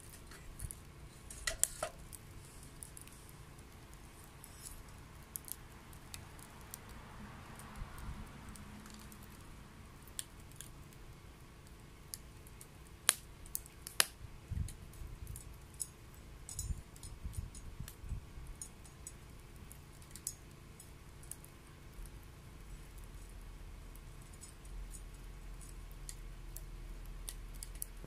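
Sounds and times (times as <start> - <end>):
wood fire crackling and popping: 0.0 - 28.0.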